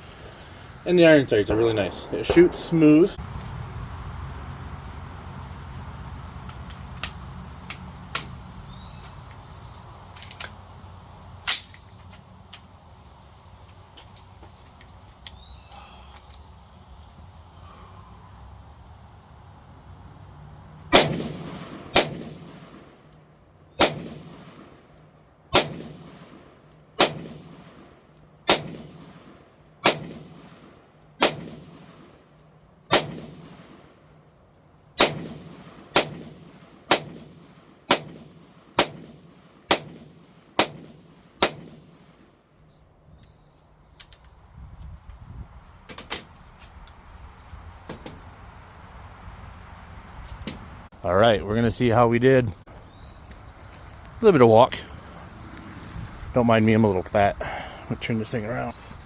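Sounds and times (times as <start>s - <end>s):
insects chirping: 0.0s - 59.0s
rifle shots with echo: 20.9s - 23.0s, 23.8s - 24.9s, 25.5s - 32.2s, 32.9s - 34.0s, 35.0s - 42.4s.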